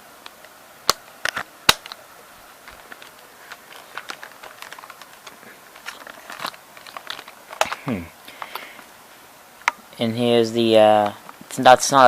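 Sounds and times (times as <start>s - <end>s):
camcorder plastic clicks and rattles: 2.7s - 7.8s.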